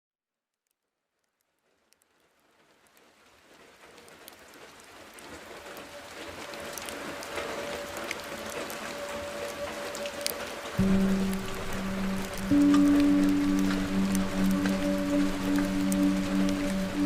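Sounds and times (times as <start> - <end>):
fire crackling: 1.5 - 17.0
faint steady tone: 7.5 - 17.0.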